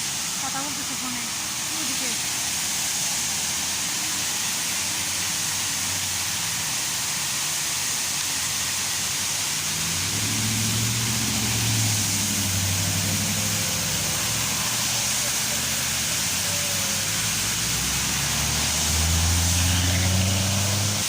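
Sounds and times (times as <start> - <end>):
waterfall rushing: 0.0 - 21.0
low engine hum: 9.6 - 21.0.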